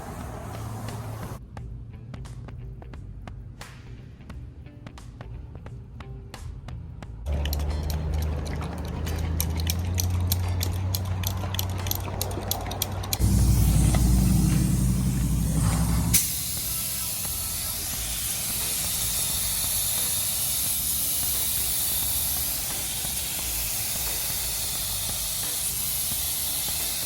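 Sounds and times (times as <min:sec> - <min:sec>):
loud low hum: 0:12.9 - 0:19.2
paint spray gun hissing: 0:13.2 - 0:27.0.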